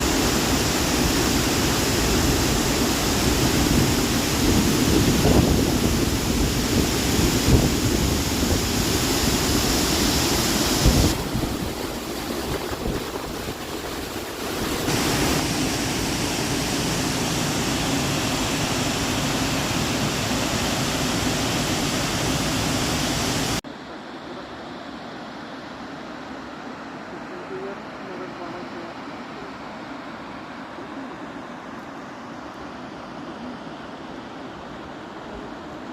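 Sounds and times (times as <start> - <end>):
waterfall roaring: 0.0 - 35.9
wind buffeting microphone: 3.3 - 9.0, 10.7 - 14.4.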